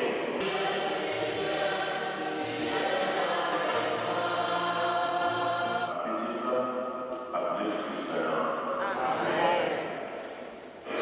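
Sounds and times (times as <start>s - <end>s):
choir singing a hymn: 0.0s - 6.4s, 8.8s - 10.1s.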